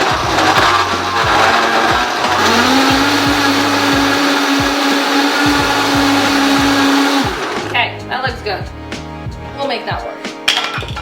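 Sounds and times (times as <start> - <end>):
blender motor running: 0.0 - 7.8.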